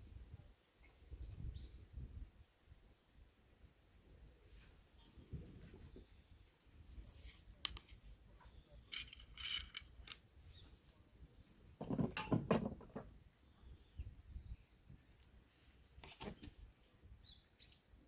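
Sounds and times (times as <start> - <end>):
steady high hiss: 0.0 - 11.8
rustles and knocks: 11.8 - 13.2.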